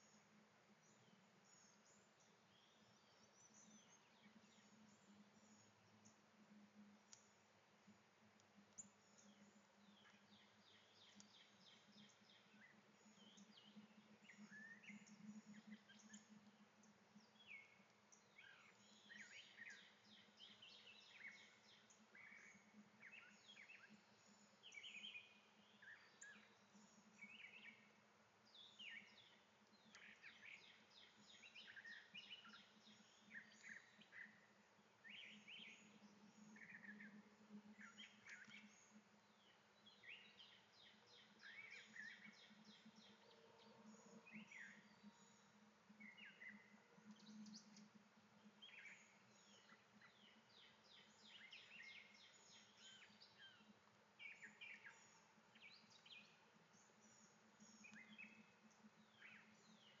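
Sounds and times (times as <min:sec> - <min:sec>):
songbirds chirping: 0:00.0 - 1:00.0.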